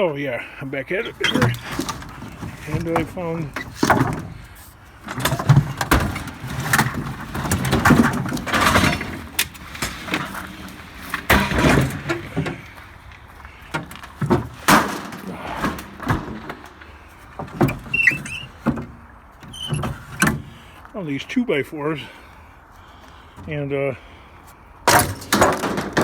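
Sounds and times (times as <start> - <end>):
hard objects knocking and scraping: 1.0 - 20.5, 24.9 - 26.0.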